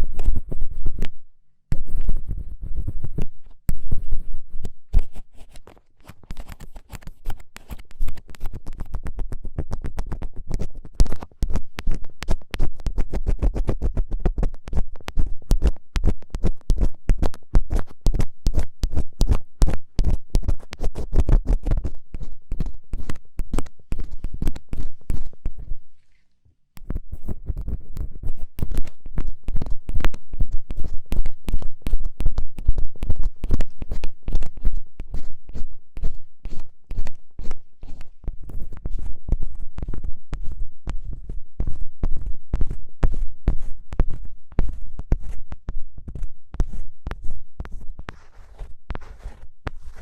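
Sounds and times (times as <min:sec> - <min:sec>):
ear pick scraping microphone: 0:20.8 - 0:45.4.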